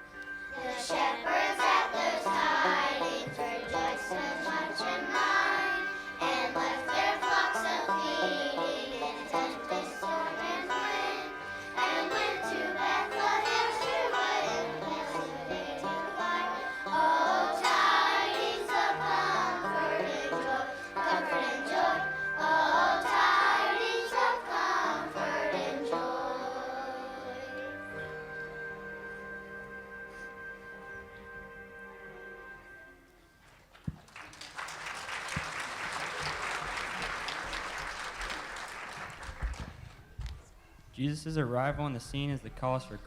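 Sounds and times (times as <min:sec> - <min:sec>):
children's choir singing: 0:00.0 - 0:30.2
instrumental accompaniment: 0:00.0 - 0:42.4.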